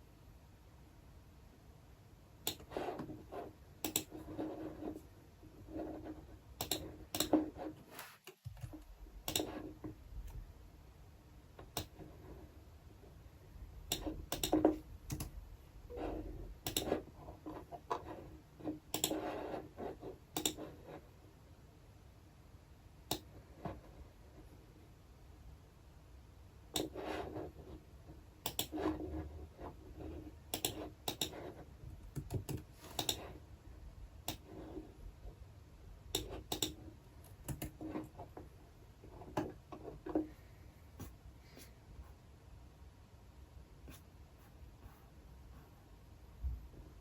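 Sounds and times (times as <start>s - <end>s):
faint room noise: 0.0s - 47.0s
computer keyboard typing: 13.9s - 15.4s, 16.7s - 17.0s, 32.0s - 33.3s, 36.2s - 37.8s.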